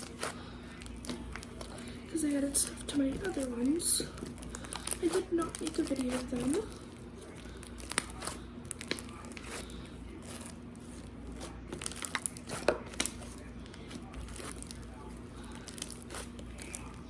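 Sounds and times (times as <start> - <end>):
slime squishing by hand: 0.0 - 17.0
small clicks and crackles: 0.7 - 10.6.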